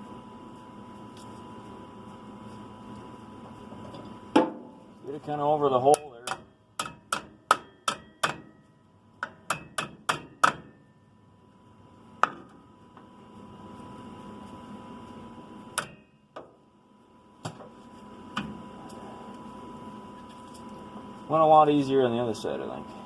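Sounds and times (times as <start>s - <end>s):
faint steady hum: 0.0s - 23.0s
hammer tapping metal: 5.9s - 10.8s.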